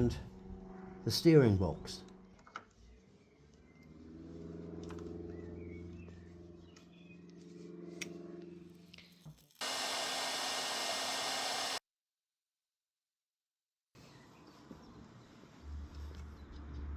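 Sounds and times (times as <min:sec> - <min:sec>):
loud even hiss: 0:09.6 - 0:11.8.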